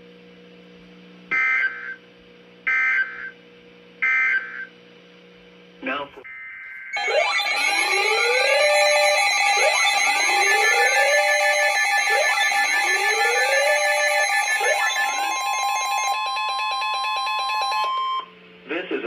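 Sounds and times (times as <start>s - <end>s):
rising whooping alarm sweep: 7.0s - 18.3s
steady electronic beeping: 7.0s - 18.3s.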